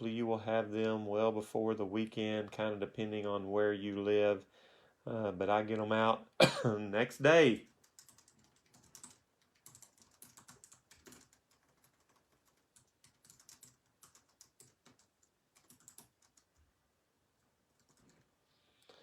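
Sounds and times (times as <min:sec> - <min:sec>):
typing on a keyboard: 0:07.6 - 0:16.7, 0:17.7 - 0:19.0.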